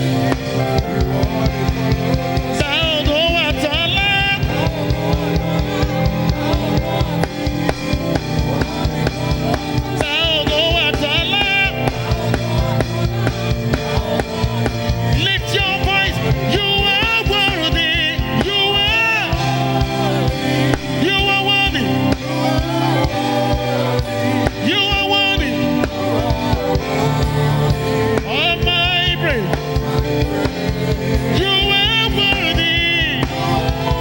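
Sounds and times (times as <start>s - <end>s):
band holding low notes: 0.0s - 34.0s
drum kit: 0.0s - 34.0s
person singing with vibrato: 0.0s - 34.0s.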